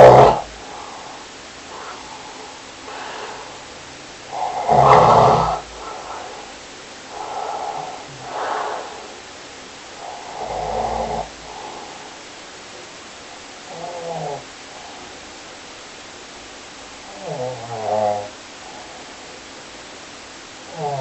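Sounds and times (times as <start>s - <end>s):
person snoring: 0.0s - 9.2s, 10.0s - 12.2s, 13.7s - 15.2s, 17.1s - 19.1s, 20.7s - 21.0s.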